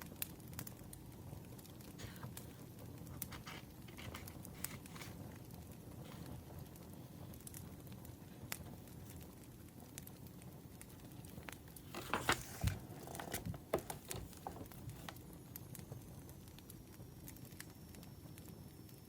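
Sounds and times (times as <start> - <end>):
wood fire crackling: 0.2 - 18.1
rustling: 11.0 - 15.2.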